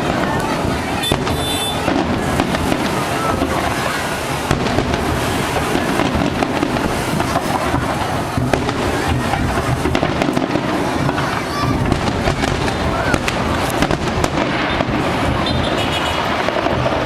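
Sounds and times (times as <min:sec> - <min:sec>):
fireworks crackling: 0:00.0 - 0:17.0.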